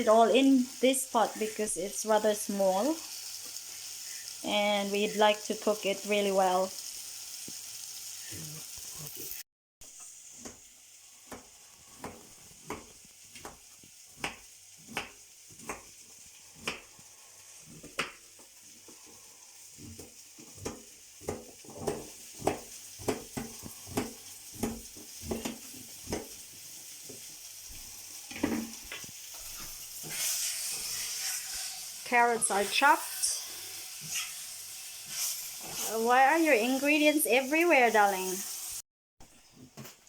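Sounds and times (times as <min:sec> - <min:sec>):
meat sizzling in oil: 0:00.0 - 0:38.8
utensil tapping pot: 0:19.9 - 0:26.4.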